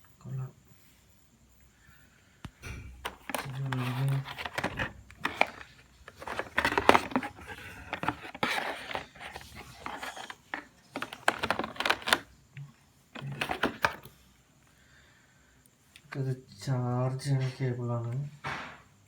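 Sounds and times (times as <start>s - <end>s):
cardboard box being opened: 3.0s - 12.2s
packaging rustling: 3.0s - 12.3s, 13.2s - 14.1s.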